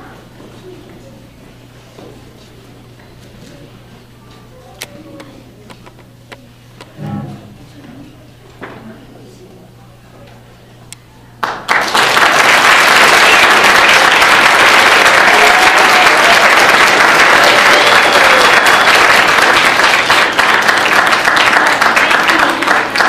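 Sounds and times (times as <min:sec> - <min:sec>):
audience applauding: 0:11.4 - 0:23.0.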